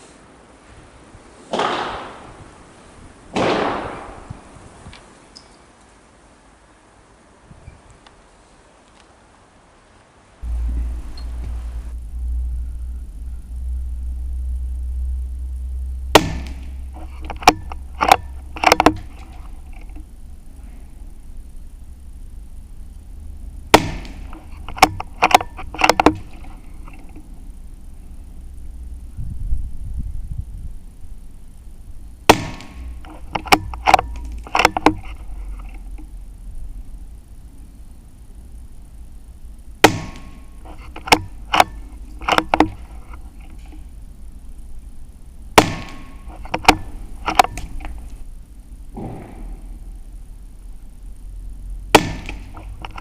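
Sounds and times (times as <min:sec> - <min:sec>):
rifle shots: 0:01.5 - 0:02.3, 0:03.3 - 0:04.3, 0:16.1 - 0:19.3, 0:23.7 - 0:26.4, 0:32.3 - 0:34.9, 0:39.8 - 0:40.4, 0:45.6 - 0:47.8, 0:51.9 - 0:52.6
steady low rumble: 0:10.4 - 0:53.0.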